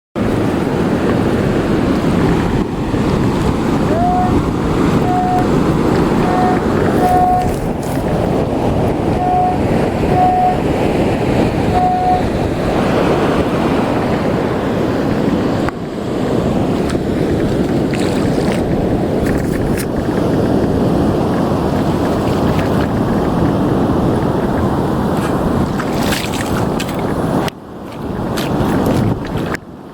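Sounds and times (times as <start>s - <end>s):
breaking surf: 0.2s - 29.6s
rushing shallow water: 0.2s - 29.9s
wind buffeting microphone: 0.2s - 29.9s
metal detector beeps: 3.9s - 7.6s, 9.2s - 10.7s, 11.6s - 12.4s.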